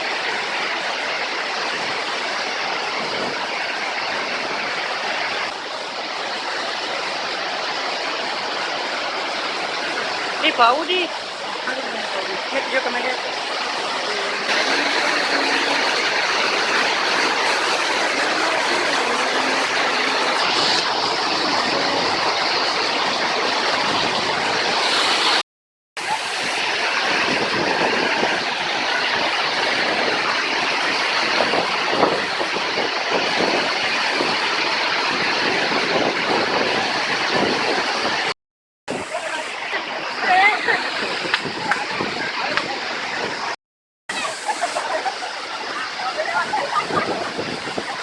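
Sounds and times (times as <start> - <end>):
waterfall rushing: 0.0 - 25.4, 26.0 - 48.0.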